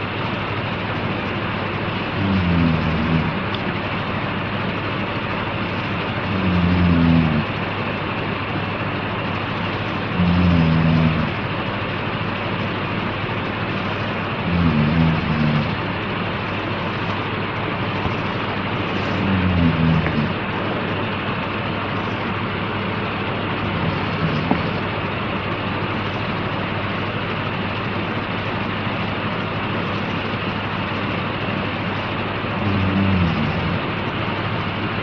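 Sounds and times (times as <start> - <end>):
man snoring: 2.0 - 3.6, 6.2 - 7.6, 9.9 - 11.5, 13.8 - 17.2, 17.9 - 21.1, 23.1 - 25.0, 32.5 - 34.0.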